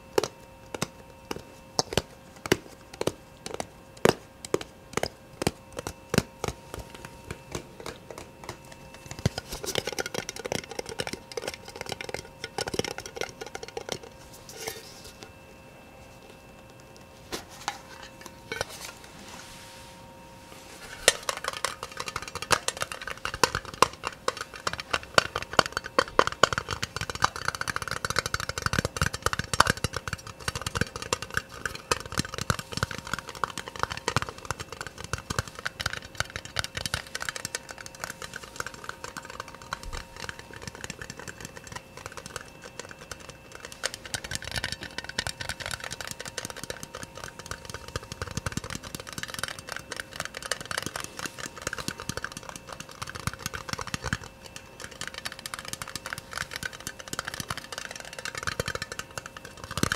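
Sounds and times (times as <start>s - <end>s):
rapid tapping on hard objects: 0.0s - 14.8s, 21.0s - 59.9s.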